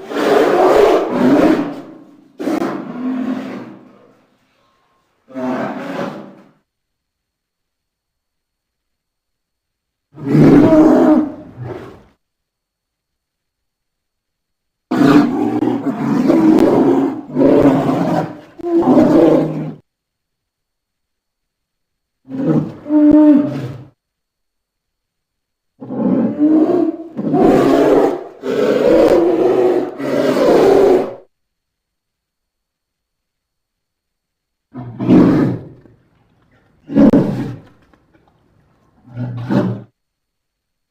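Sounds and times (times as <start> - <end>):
polar bear roaring: 0.0 - 4.1, 5.3 - 6.5, 10.2 - 12.0, 14.9 - 19.8, 22.2 - 24.0, 25.8 - 31.3, 34.7 - 36.0, 36.6 - 37.8, 39.0 - 40.0.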